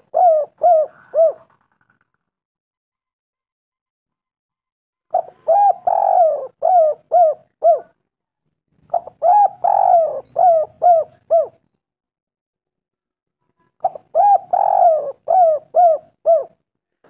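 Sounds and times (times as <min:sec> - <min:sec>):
dove cooing: 0:00.0 - 0:01.9, 0:05.1 - 0:08.0, 0:08.9 - 0:11.7, 0:13.8 - 0:16.6.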